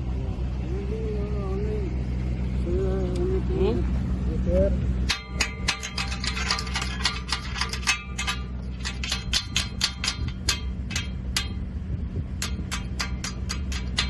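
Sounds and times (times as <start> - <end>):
low hum: 0.0 - 14.0
hammer striking steel: 5.1 - 11.7, 12.4 - 14.0.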